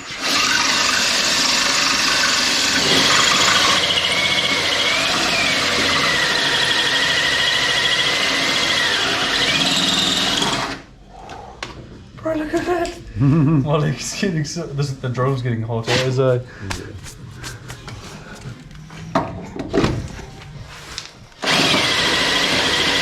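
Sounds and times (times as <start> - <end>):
drill bit squealing: 0.0 - 10.7
electric drill boring into metal: 0.0 - 10.8, 21.4 - 23.0.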